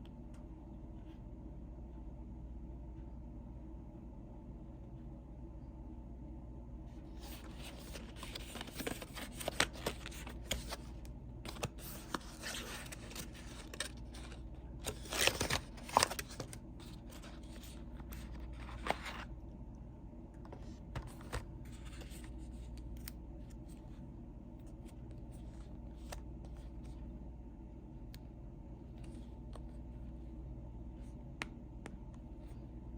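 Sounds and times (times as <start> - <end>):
steady low hum: 0.0 - 32.9
packaging being torn open: 11.6 - 16.6.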